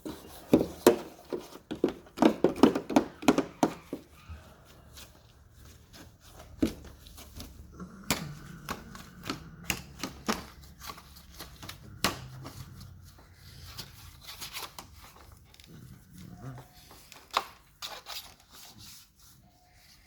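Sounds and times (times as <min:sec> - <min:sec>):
sharp handling clicks and knocks: 0:00.0 - 0:04.1, 0:06.2 - 0:12.7.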